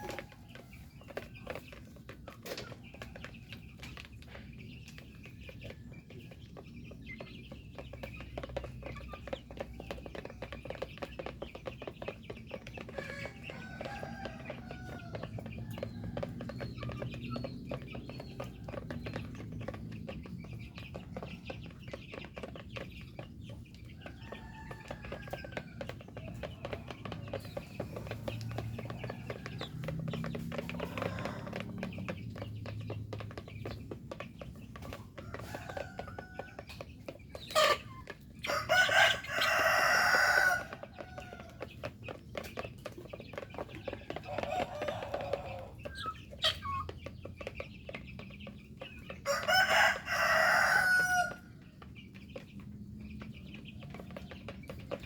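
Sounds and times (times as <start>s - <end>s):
chickens clucking: 0.0s - 55.0s.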